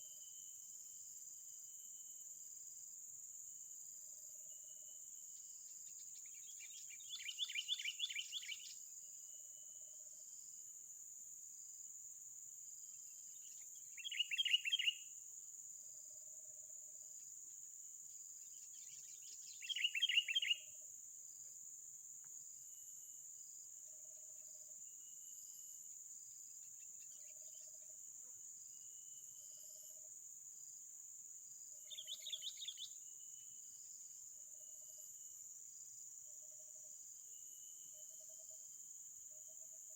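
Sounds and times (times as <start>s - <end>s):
insects droning: 0.0s - 39.9s.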